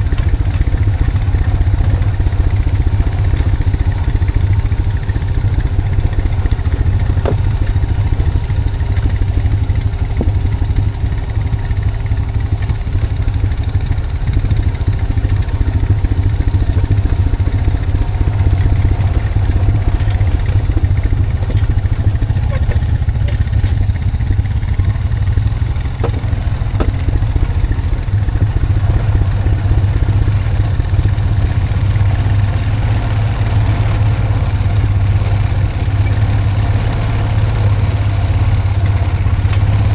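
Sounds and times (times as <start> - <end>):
atv engine running: 0.0 - 39.9
light knocks and clatters: 0.1 - 32.7.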